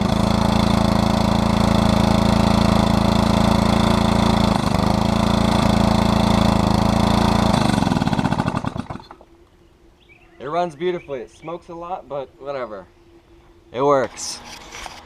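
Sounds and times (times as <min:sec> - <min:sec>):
small engine idling: 0:00.0 - 0:09.3.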